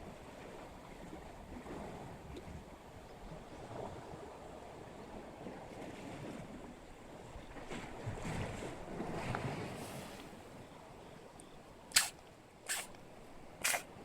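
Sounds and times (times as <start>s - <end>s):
squid squirting water: 11.9s - 13.0s, 13.6s - 14.0s.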